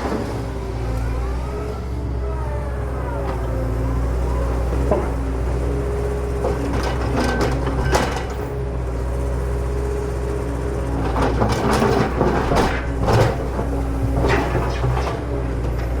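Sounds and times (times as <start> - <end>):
diesel engine running: 0.0 - 16.0
hydraulic whine: 11.9 - 16.0.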